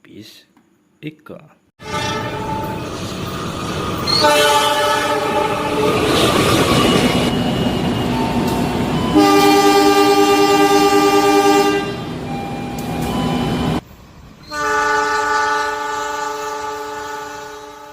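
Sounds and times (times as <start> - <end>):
train horn: 1.8 - 3.0, 4.2 - 6.1, 9.0 - 12.2, 14.4 - 17.9.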